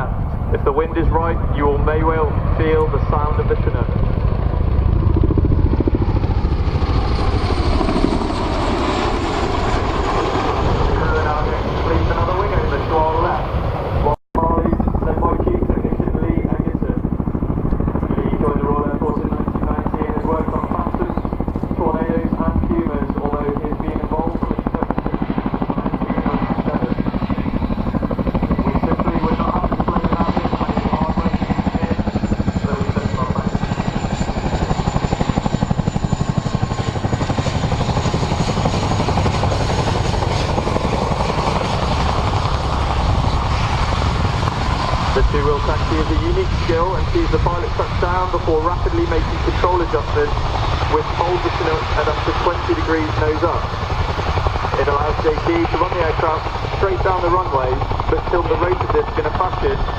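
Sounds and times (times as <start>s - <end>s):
helicopter rotor blade slap: 2.1s - 59.9s
helicopter rotor blade-slap: 28.1s - 46.9s.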